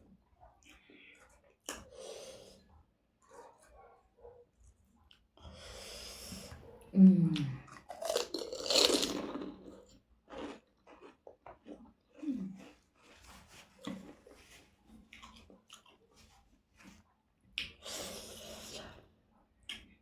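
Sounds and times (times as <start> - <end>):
wet chewing: 7.4 - 17.0
crunching bite: 7.8 - 12.4.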